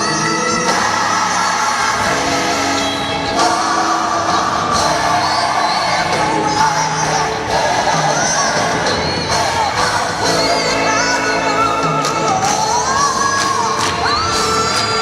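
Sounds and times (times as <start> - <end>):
gospel choir singing: 0.0 - 15.0
musical accompaniment: 0.0 - 15.0.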